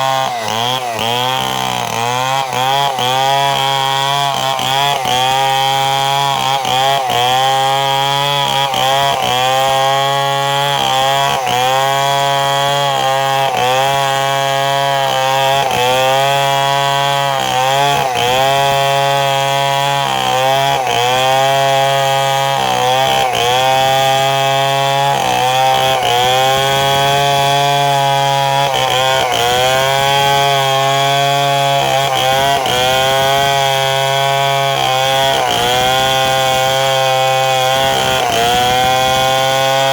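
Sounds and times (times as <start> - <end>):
chainsaw cutting: 0.0 - 39.9.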